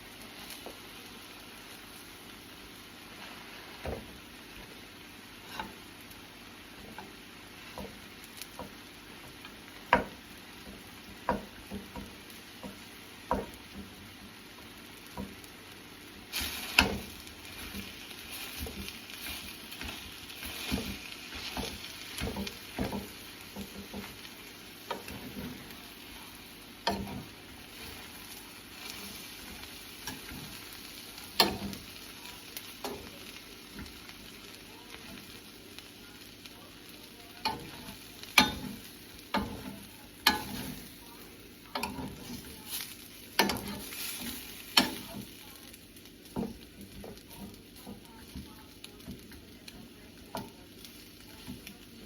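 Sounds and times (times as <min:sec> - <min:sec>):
food sizzling: 0:00.0 - 0:52.0
utensil scraping a frying pan: 0:37.4 - 0:40.9.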